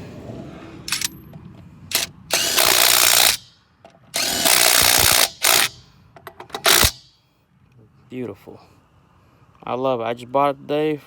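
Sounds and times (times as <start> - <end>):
impact wrench hammering: 1.9 - 3.5, 4.2 - 5.8, 6.6 - 7.1.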